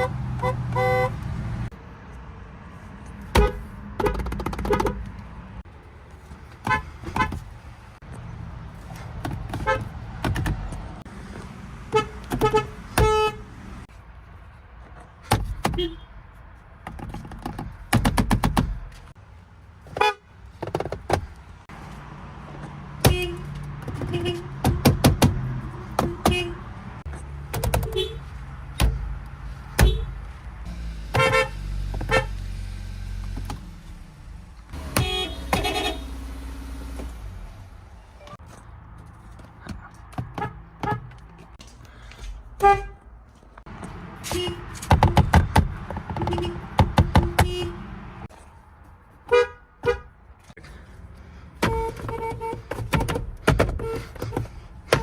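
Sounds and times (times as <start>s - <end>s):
car horn honks: 0.0s - 1.2s, 3.3s - 5.0s, 11.9s - 13.5s, 15.7s - 16.1s, 23.0s - 24.8s, 26.0s - 26.7s, 27.8s - 28.3s, 29.8s - 30.2s, 31.1s - 32.4s, 34.8s - 36.4s, 42.6s - 43.0s, 44.2s - 44.8s, 46.2s - 48.0s, 49.3s - 50.1s, 51.6s - 55.0s
traffic and engine rumble: 0.0s - 55.0s.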